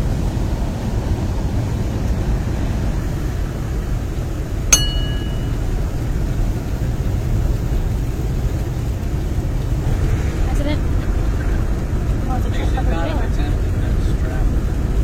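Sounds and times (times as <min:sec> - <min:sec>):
metallic clink: 0:04.7 - 0:05.6.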